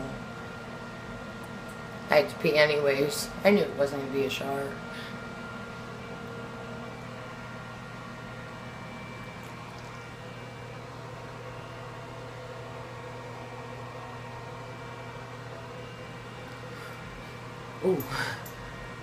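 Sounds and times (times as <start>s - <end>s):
fan motor humming: 0.0s - 19.0s.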